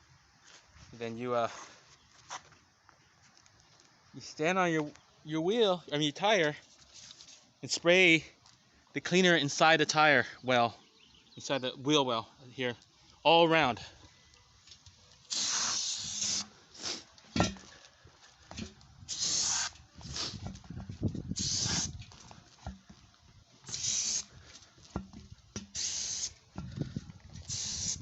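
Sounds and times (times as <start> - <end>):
aerosol can spraying: 15.3 - 17.0, 19.1 - 20.4, 21.3 - 22.0, 23.6 - 24.3, 25.6 - 26.4, 27.4 - 28.0.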